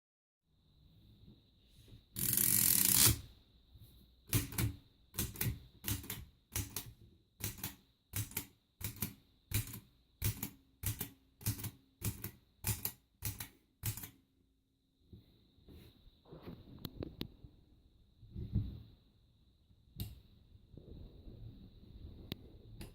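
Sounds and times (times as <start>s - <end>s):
typewriter clacking: 4.3s - 14.1s.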